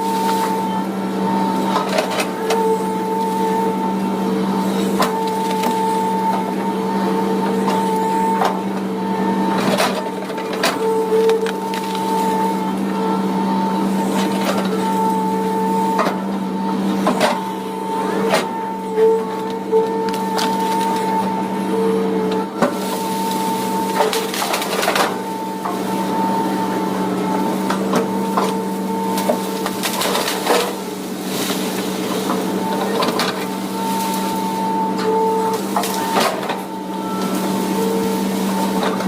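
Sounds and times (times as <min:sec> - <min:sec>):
excavator engine humming: 0:00.0 - 0:39.0
high machine whine: 0:00.0 - 0:39.0
wood and brush cracking: 0:04.9 - 0:06.4, 0:09.6 - 0:12.9, 0:19.4 - 0:21.2, 0:22.6 - 0:25.9, 0:27.6 - 0:39.0.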